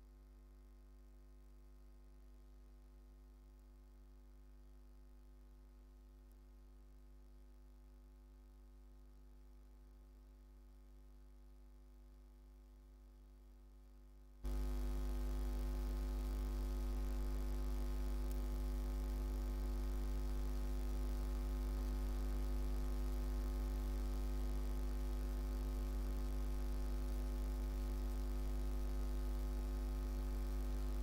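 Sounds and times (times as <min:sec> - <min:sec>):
electrical mains hum: 0:14.4 - 0:31.0.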